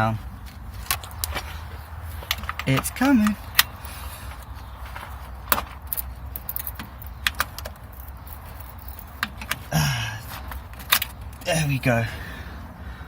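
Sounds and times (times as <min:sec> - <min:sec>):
metal tools clicking and clinking: 0:05.6 - 0:09.7, 0:10.5 - 0:11.5
person grunting: 0:09.7 - 0:10.2.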